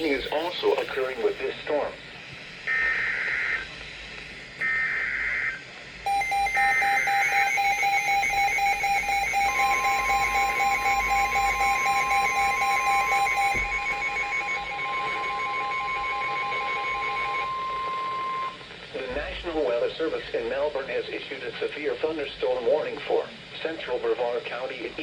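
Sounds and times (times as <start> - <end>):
rapid electronic alarm beeping: 0.0 - 1.6, 4.6 - 18.6
data bursts: 0.0 - 1.9, 5.2 - 18.7
steady warning tone: 0.0 - 19.5.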